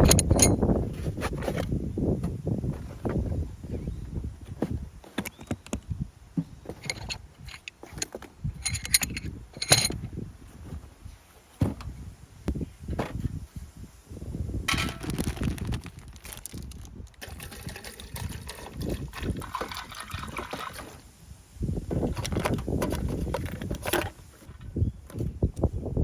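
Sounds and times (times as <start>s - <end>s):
wind on microphone: 0.0s - 7.6s, 8.4s - 26.0s
metallic clinks: 8.6s - 10.0s.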